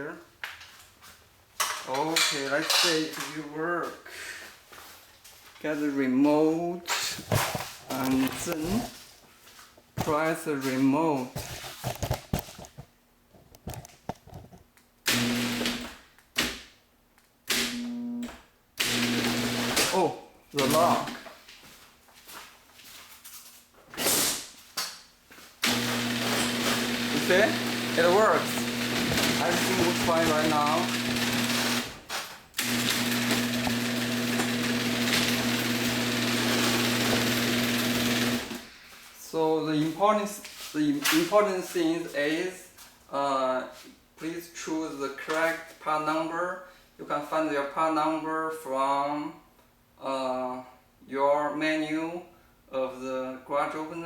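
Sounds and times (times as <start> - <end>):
garage door opener motor hum: 15.1 - 16.0, 17.6 - 19.9, 25.6 - 38.7.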